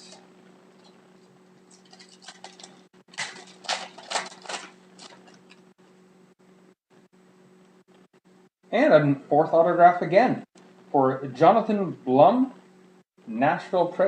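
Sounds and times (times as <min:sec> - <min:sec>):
faint electrical hum: 0:00.0 - 0:14.0
cards flicking and rustling: 0:01.7 - 0:05.7.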